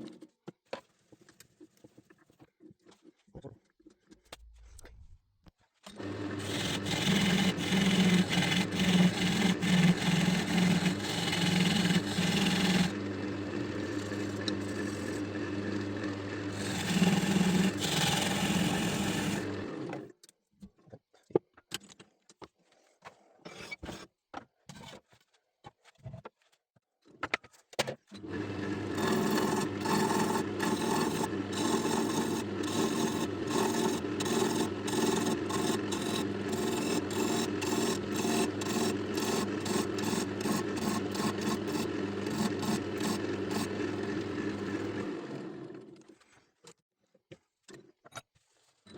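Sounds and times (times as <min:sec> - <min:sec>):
tool rasping on spinning resin: 0:06.0 - 0:20.0, 0:28.5 - 0:45.0
wood lathe humming: 0:06.0 - 0:20.1, 0:28.2 - 0:45.9.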